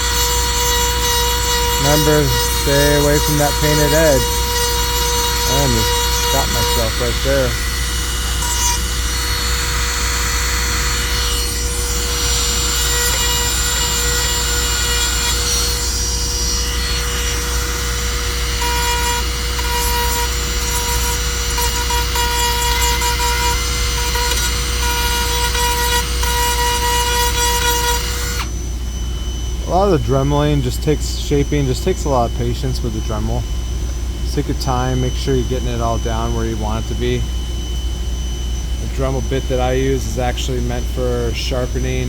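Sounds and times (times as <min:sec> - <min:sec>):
rotary tool grinding plastic: 0:00.0 - 0:28.6.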